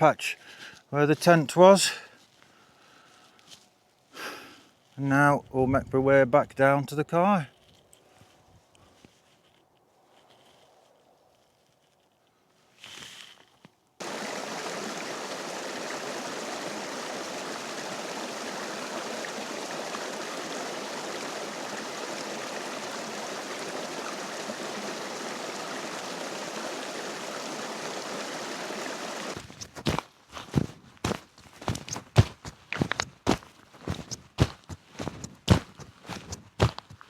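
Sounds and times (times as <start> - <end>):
stream water rushing: 14.0 - 30.0, 33.8 - 36.9
sharp thuds: 29.4 - 37.0.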